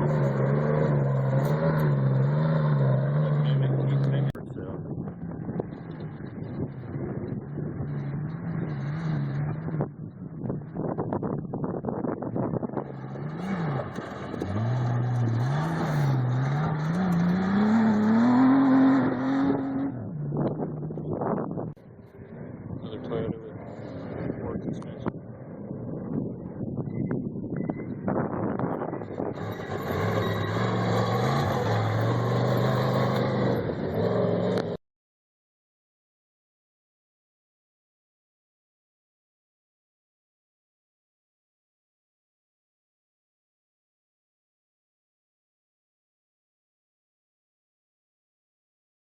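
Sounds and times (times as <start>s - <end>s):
engine revving driving past: 0.0s - 4.4s, 5.1s - 10.9s, 12.7s - 26.7s, 28.5s - 34.8s.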